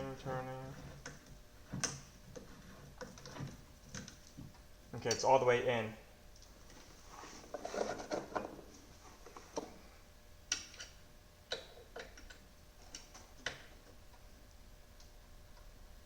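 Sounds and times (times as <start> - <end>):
sharp clicks and taps of tools: 10.5 - 13.6.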